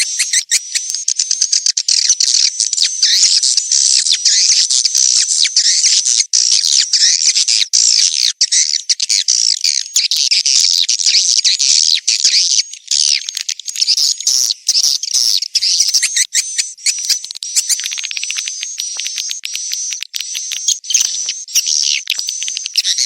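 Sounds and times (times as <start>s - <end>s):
swiftlets twittering and chirping: 0.0s - 23.0s
rapid bird clicks: 14.9s - 23.0s.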